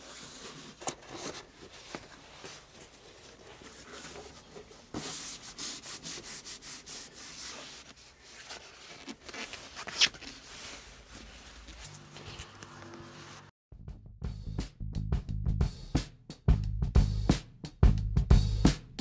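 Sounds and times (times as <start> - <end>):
scraping and rubbing: 0.0 - 13.5.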